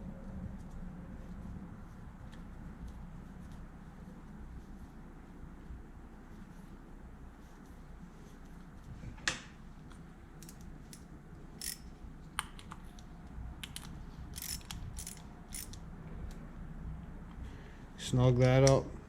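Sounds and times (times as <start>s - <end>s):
ratchet wrench clicking: 11.6s - 11.9s, 13.6s - 15.8s.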